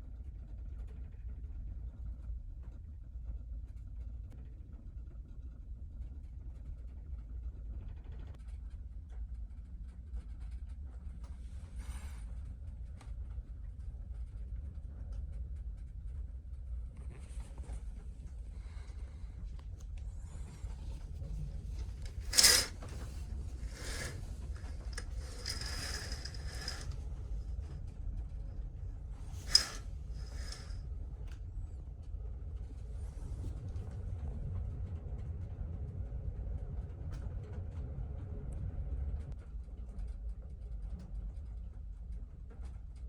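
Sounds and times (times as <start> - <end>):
rustling and scraping handling: 20.2 - 27.8, 29.2 - 30.8
sharp clicks: 23.6 - 26.9.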